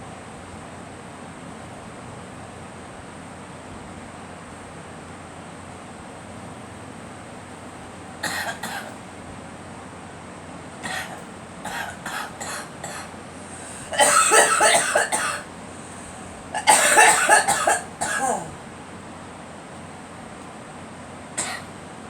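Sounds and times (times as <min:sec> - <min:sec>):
girl coughing: 0:08.2 - 0:08.9, 0:10.8 - 0:15.5, 0:16.6 - 0:18.6, 0:21.4 - 0:21.7.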